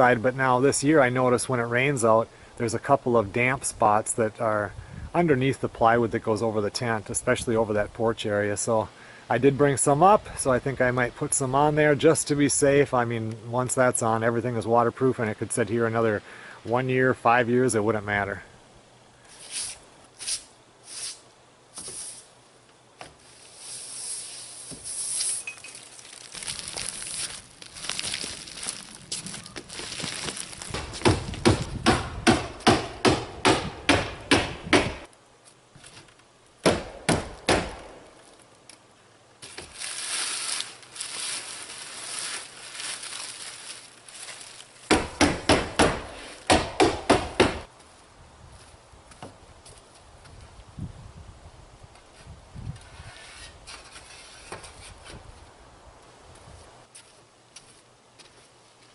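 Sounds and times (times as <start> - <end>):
rustling scraping noise: 19.3 - 22.3, 23.0 - 31.4, 39.4 - 44.8, 52.0 - 55.3
hammer striking plywood: 30.7 - 35.1, 44.9 - 47.7.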